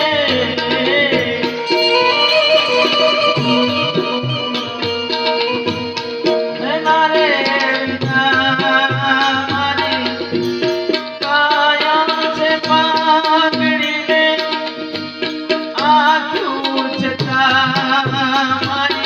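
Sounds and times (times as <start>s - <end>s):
person singing: 0.0s - 10.1s
banjo melody: 0.0s - 19.0s
devotional folk music: 0.0s - 19.0s
tabla strokes: 0.0s - 19.0s.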